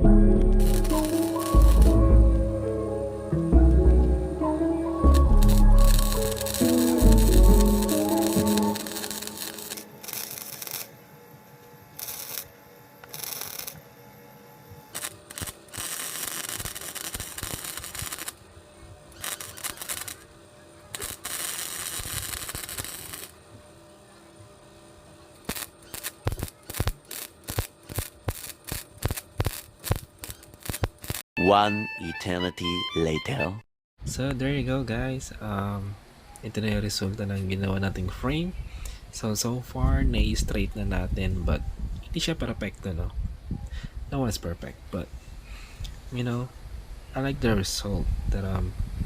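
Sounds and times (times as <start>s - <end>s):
welder arcing crackle: 0.6s - 2.0s, 5.0s - 14.0s, 14.7s - 23.6s, 25.3s - 31.2s.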